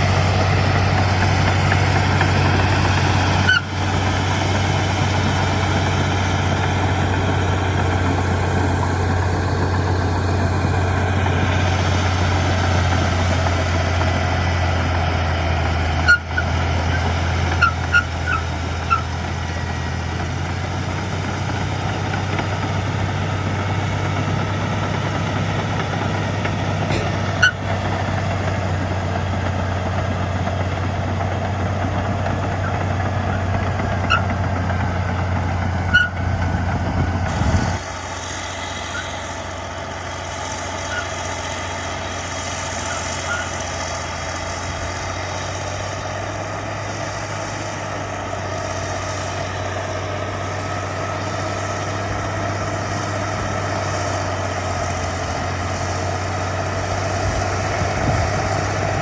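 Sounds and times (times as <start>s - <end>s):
diesel machinery engine hum: 0.0s - 59.0s
sharp metallic knocks: 26.5s - 27.9s.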